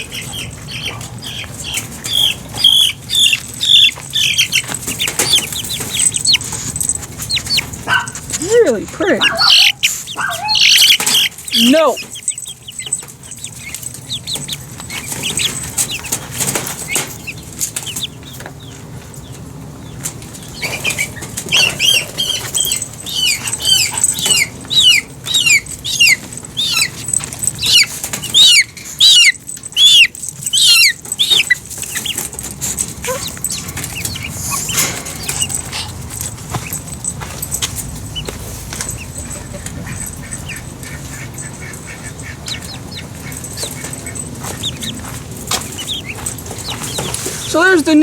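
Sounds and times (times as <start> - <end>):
chicks peeping: 0.0 - 48.0
chicks scuffling: 0.0 - 48.0
wings flapping: 1.8 - 18.2.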